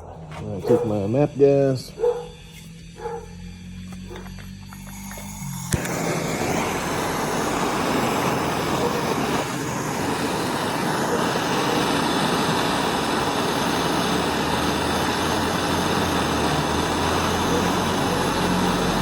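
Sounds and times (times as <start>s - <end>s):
torch flame hissing: 0.0s - 19.0s.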